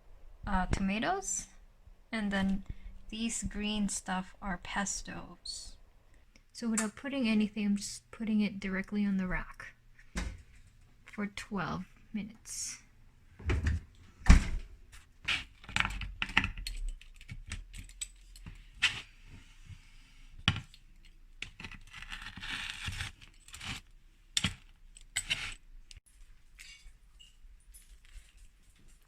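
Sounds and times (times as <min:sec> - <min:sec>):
metallic clinks and rattles: 0:16.5 - 0:18.7, 0:26.1 - 0:29.0.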